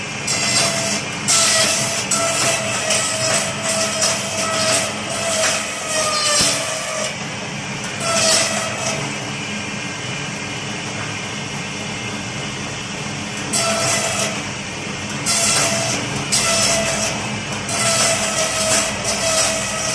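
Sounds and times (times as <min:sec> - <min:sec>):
blades rasping through bamboo: 0:00.3 - 0:07.1, 0:15.3 - 0:19.9.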